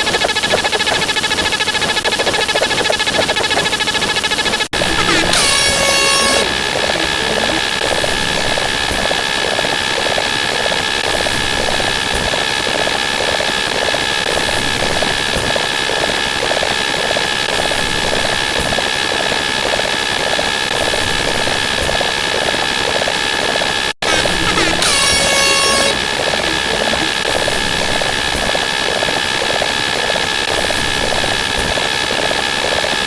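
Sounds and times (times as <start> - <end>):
fast repeating pulse: 0.2 - 8.1, 24.0 - 27.9
high whistling tones: 4.8 - 8.0, 24.0 - 27.5.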